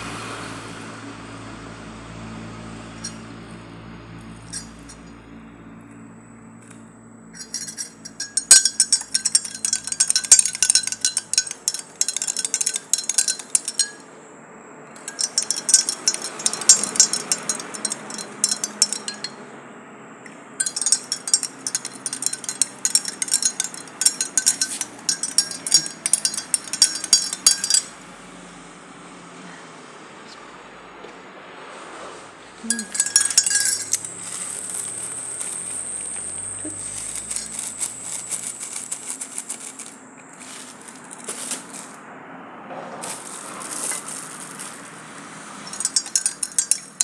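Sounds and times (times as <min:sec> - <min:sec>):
spoon clinking in a glass: 0:04.5 - 0:05.2, 0:07.4 - 0:14.0, 0:15.0 - 0:19.4, 0:20.6 - 0:28.0, 0:32.7 - 0:42.0, 0:43.0 - 0:44.9, 0:45.6 - 0:47.0.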